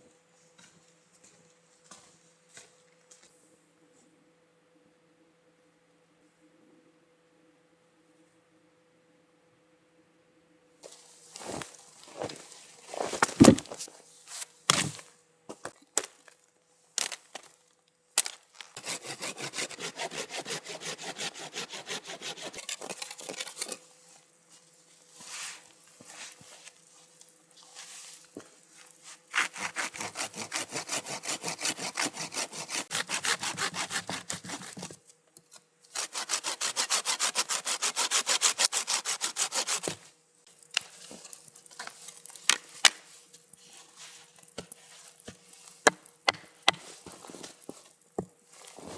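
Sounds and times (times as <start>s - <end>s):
hand saw cutting wood: 18.8s - 23.8s, 29.2s - 35.0s, 35.9s - 40.0s.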